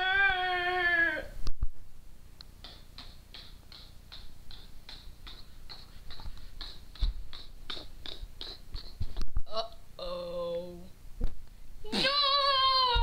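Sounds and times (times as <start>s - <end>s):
clock ticking: 2.5s - 8.6s.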